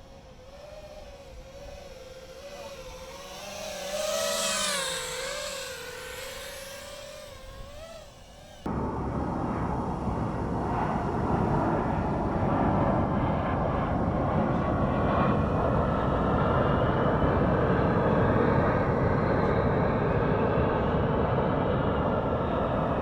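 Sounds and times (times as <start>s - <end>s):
faint motor whine: 0.0s - 18.2s
quadcopter motors whirring: 0.0s - 23.0s.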